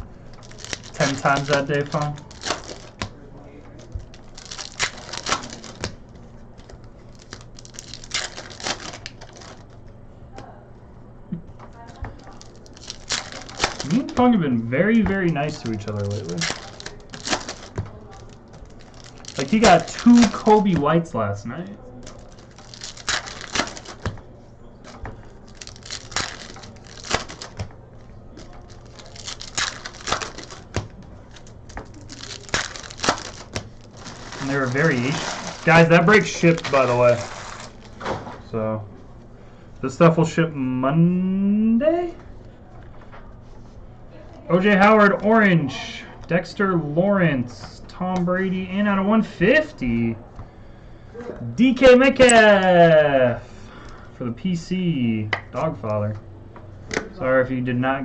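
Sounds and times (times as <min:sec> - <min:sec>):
wrappers crinkling and tearing: 0:00.2 - 0:09.8, 0:11.6 - 0:20.9, 0:21.9 - 0:38.2
cards rustling and sliding: 0:00.4 - 0:03.1, 0:18.6 - 0:20.9, 0:31.8 - 0:37.8.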